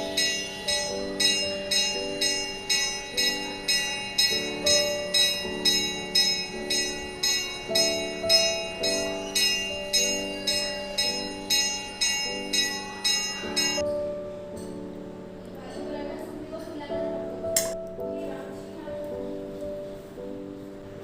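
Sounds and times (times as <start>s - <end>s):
bell-like notes over held chords: 0.0s - 16.2s.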